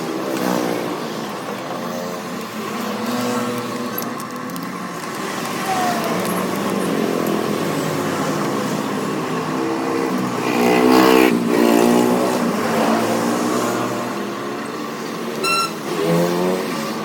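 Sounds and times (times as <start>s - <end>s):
motorcycle engine revving: 5.0s - 14.6s, 15.4s - 17.0s.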